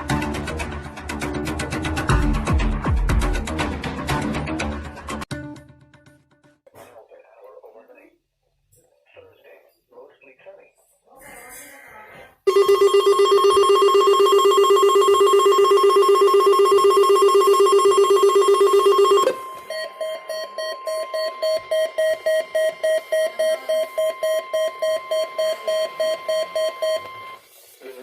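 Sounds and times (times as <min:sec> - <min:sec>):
warbling two-tone alarm: 0:12.5 - 0:27.4.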